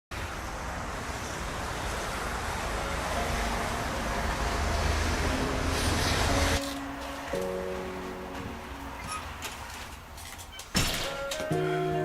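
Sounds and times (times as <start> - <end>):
road traffic noise: 0.1 - 12.0
faint music: 2.5 - 12.0.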